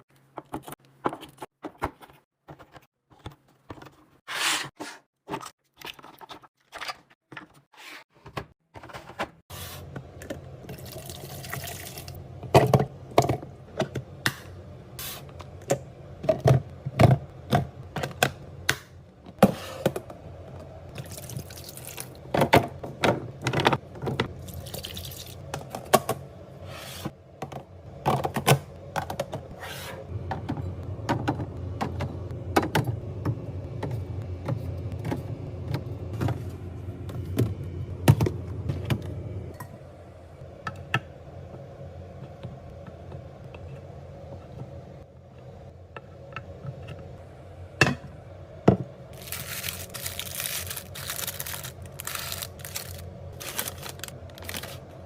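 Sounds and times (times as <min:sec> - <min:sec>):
containers clicking and knocking: 0:48.7 - 0:54.8.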